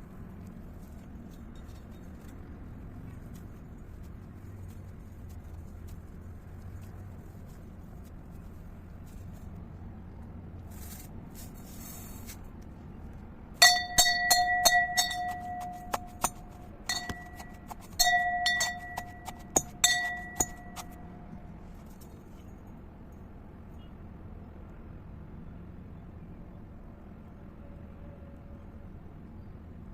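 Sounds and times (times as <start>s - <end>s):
faint rustle: 0.0s - 12.7s
sharp clinks on glass: 13.6s - 21.0s.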